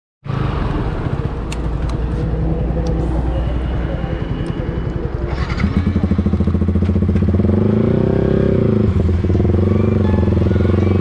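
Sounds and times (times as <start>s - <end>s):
motorcycle engine revving: 5.1s - 11.0s.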